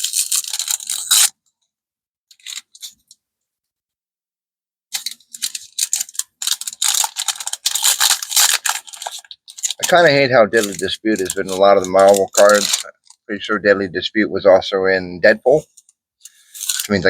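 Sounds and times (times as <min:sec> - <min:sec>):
plastic packaging rustling: 0:00.0 - 0:01.3, 0:04.9 - 0:13.3, 0:15.7 - 0:17.0.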